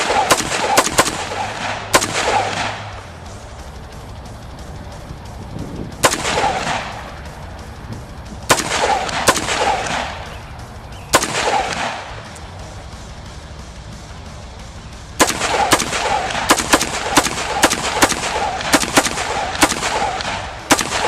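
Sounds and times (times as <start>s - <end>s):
rifle shots with echo: 0.0s - 3.3s, 6.0s - 7.3s, 8.4s - 10.4s, 11.0s - 12.4s, 15.2s - 21.0s.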